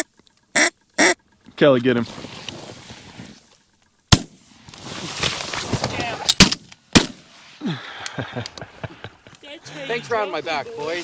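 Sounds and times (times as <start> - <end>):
shotgun blasts: 4.1 - 4.4, 6.4 - 7.3.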